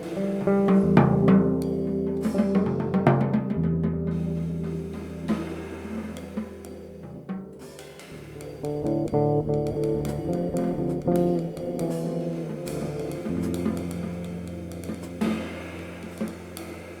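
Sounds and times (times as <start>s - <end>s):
drum hits and cymbals: 0.0s - 9.2s, 9.8s - 17.0s
plucked bass notes: 0.0s - 17.0s.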